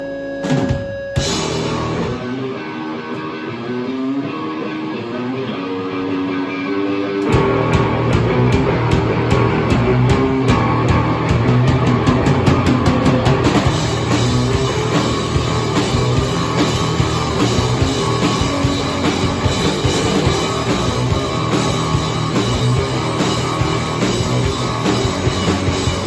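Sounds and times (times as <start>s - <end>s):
drums and bass beat: 0.0s - 5.7s, 7.1s - 26.0s
electric guitar riff: 0.0s - 26.0s.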